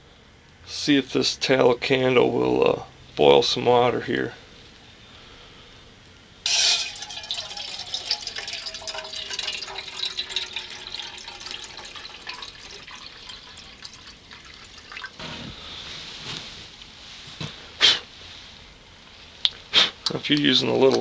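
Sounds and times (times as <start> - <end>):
water pouring into metal pot: 6.5 - 15.2.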